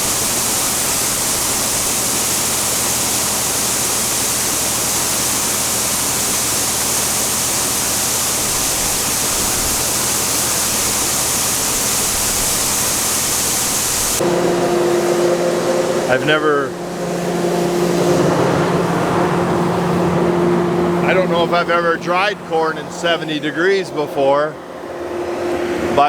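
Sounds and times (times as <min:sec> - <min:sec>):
grain dryer fan and burner rushing: 0:00.0 - 0:26.0
low steady hum: 0:08.5 - 0:26.0.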